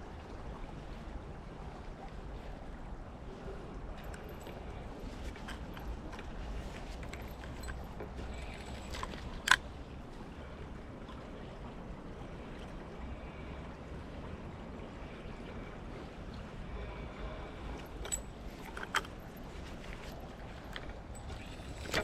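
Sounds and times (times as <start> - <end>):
creek water flowing: 0.0 - 22.0.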